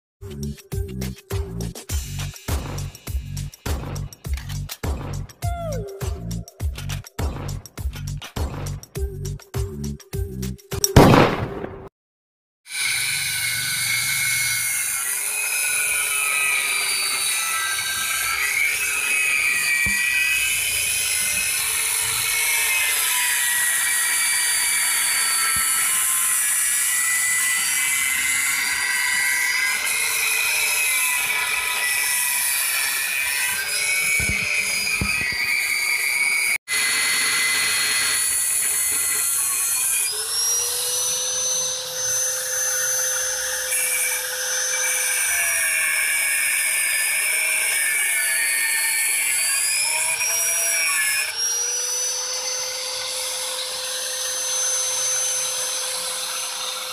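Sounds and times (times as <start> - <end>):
power tool motor whining: 12.7 - 56.9.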